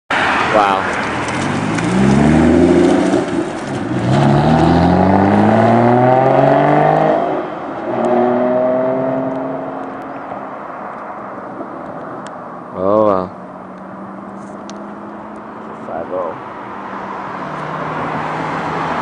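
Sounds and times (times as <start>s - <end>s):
car engine accelerating: 0.4s - 10.5s.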